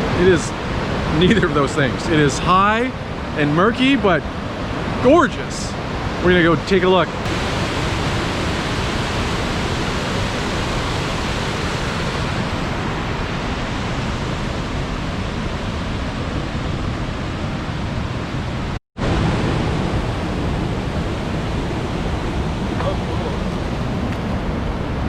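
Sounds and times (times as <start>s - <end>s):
river rushing: 7.2s - 17.3s.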